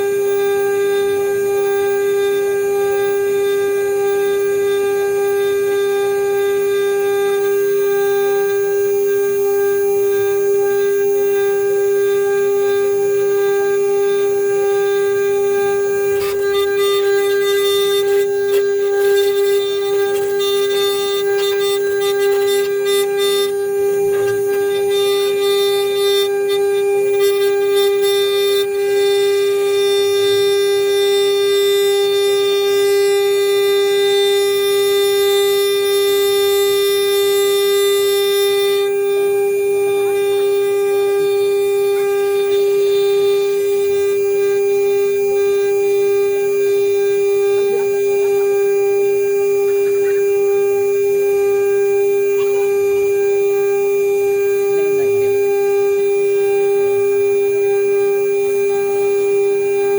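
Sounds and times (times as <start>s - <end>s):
router spindle whine: 0.0s - 59.9s
rough crackling of metal cutting: 12.6s - 33.9s, 41.2s - 59.9s.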